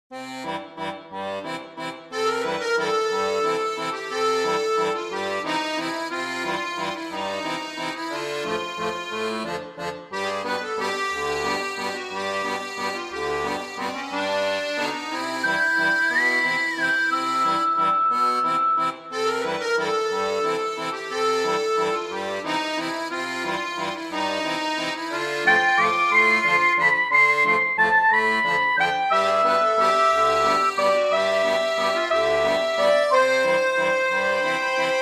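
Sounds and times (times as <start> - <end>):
accordion-like reed melody: 0.1 - 35.0
background music: 10.2 - 35.0.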